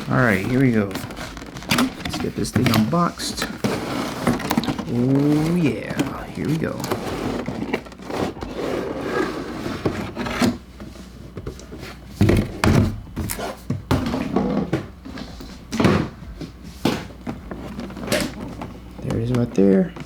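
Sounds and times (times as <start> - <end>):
packaging rustling and scraping: 0.0 - 20.0
knocks and thumps: 12.2 - 20.0.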